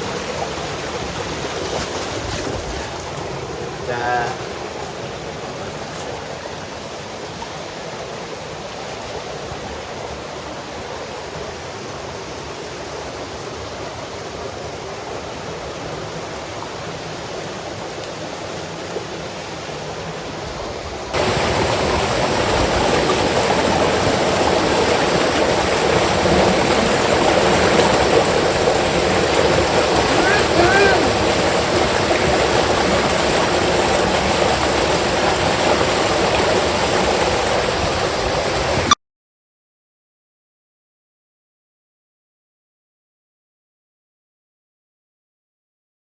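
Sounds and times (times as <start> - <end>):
heavy rain: 21.1 - 38.9.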